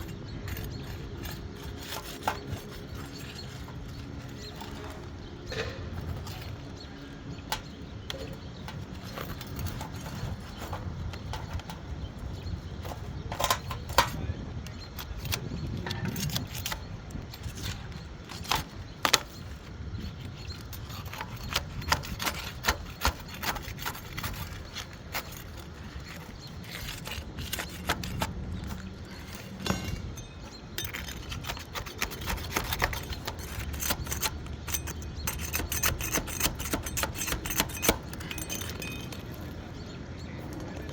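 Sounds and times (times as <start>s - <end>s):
tapping and knocking on shingle roof: 21.1s - 25.3s.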